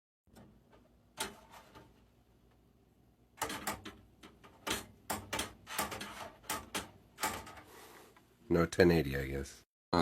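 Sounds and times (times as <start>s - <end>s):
hardware clicks and knocks: 3.4s - 7.7s.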